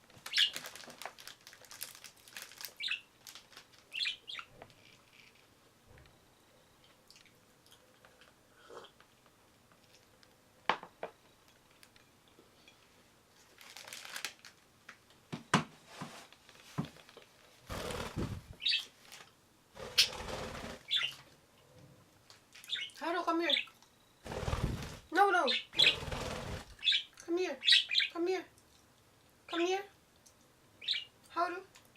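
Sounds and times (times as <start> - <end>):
rustling and wing flapping: 16.5 - 21.3, 24.2 - 25.2, 25.8 - 26.8
budgerigar high chirps: 25.5 - 26.0, 26.8 - 28.2, 30.8 - 31.1.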